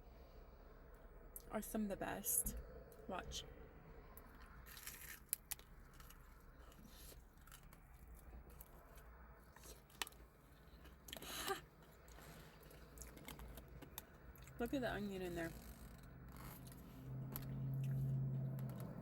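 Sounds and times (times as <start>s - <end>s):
faint chewing: 4.2s - 14.6s.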